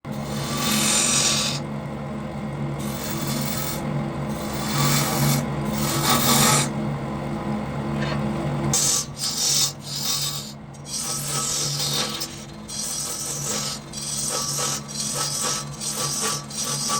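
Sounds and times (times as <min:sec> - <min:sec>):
lathe motor hum: 0:00.1 - 0:16.9
cutting tool scraping wood: 0:04.4 - 0:06.7, 0:08.8 - 0:16.9.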